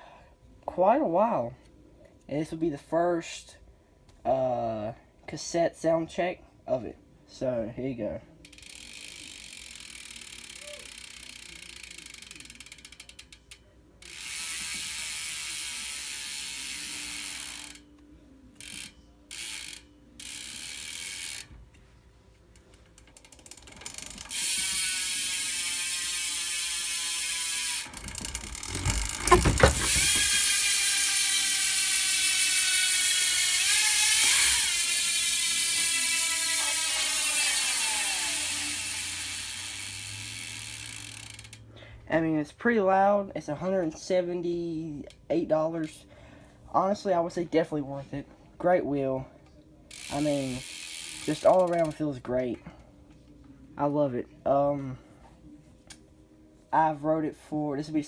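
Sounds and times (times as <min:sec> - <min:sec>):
bicycle hub ratcheting buzz: 0:08.4 - 0:17.9, 0:18.5 - 0:21.5, 0:22.5 - 0:41.7, 0:49.9 - 0:52.0
wheel thump: 0:27.9 - 0:30.8.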